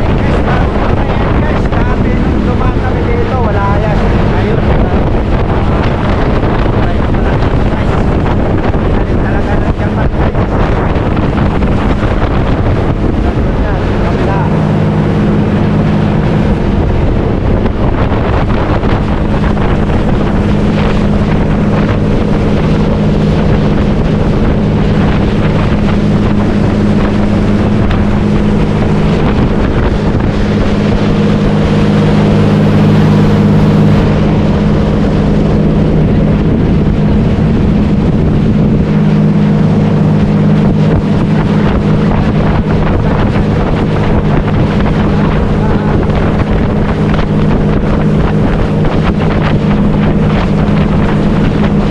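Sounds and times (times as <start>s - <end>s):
motorboat engine running: 0.0s - 51.9s
wind noise on microphone: 0.0s - 51.9s.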